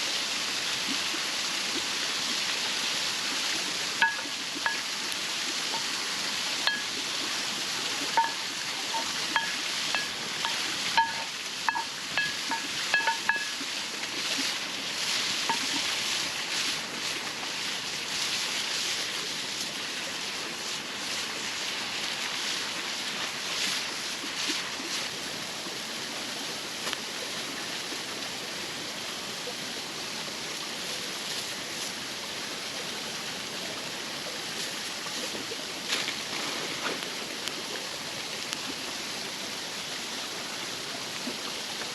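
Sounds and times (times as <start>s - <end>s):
waterfall rushing: 0.0s - 41.9s
metal utensil clinking on pot: 4.0s - 4.9s, 6.6s - 6.9s, 8.2s - 13.6s.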